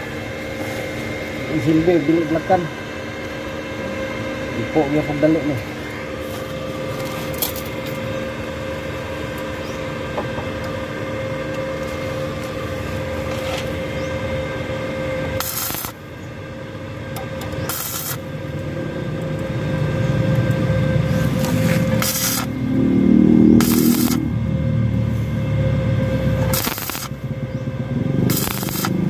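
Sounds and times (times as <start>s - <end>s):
mechanical hum: 0.0s - 29.0s
bursts of high hiss: 22.0s - 22.5s, 23.6s - 24.2s, 26.5s - 27.1s, 28.3s - 29.0s.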